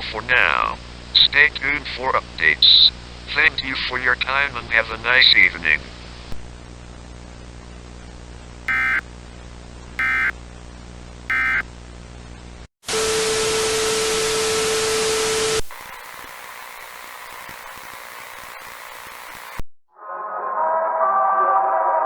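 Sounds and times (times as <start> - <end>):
static hiss with low tone: 6.0 - 9.0, 9.8 - 12.7, 15.1 - 19.6
alert data tones: 8.7 - 9.0, 10.0 - 10.3, 11.3 - 11.6.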